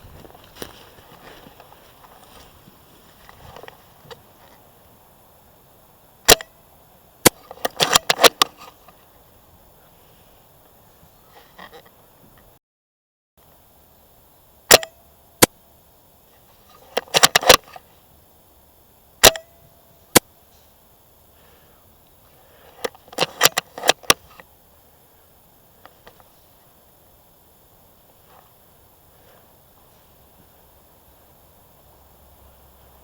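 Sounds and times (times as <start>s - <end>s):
airsoft rifle shot: 6.3s - 6.5s, 7.2s - 8.5s, 14.7s - 15.6s, 19.2s - 20.3s
rifle bolt clacking: 7.6s - 8.5s.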